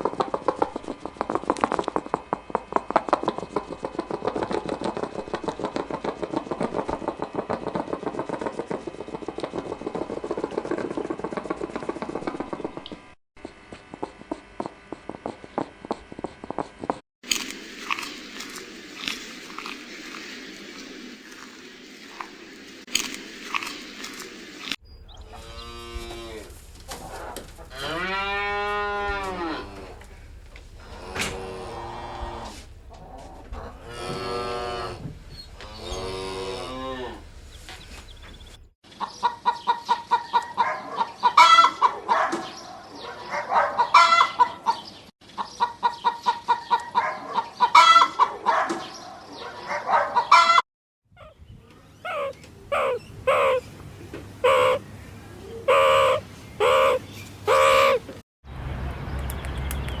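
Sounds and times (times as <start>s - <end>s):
cow mooing: 25.2s - 37.4s
chickens clucking: 25.2s - 50.6s, 51.2s - 58.2s
short bird calls: 51.2s - 53.7s, 54.4s - 54.8s, 55.5s - 58.1s.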